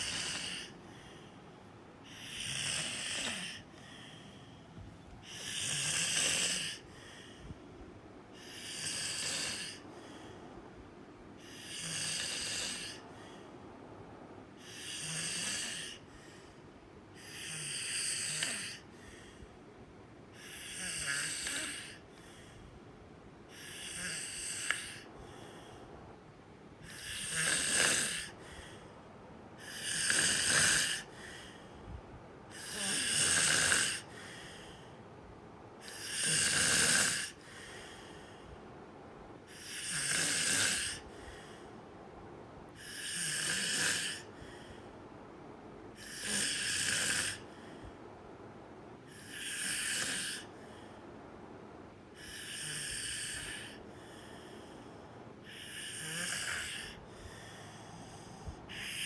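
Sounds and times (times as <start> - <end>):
person snoring: 0.0 - 1.2, 2.0 - 4.3, 5.2 - 6.9, 8.4 - 10.2, 11.4 - 13.0, 14.6 - 16.1, 17.2 - 18.9, 20.4 - 22.0, 23.5 - 25.8, 26.8 - 28.8, 29.6 - 31.6, 32.5 - 34.9, 35.8 - 38.4, 39.5 - 41.6, 42.8 - 44.9, 46.0 - 47.6, 49.1 - 50.8, 52.2 - 59.0
quiet breathing: 0.0 - 59.0.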